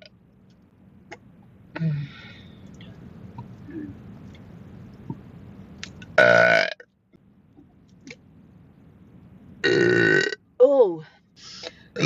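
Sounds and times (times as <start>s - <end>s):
person burping loudly: 6.2s - 6.8s, 9.6s - 10.4s.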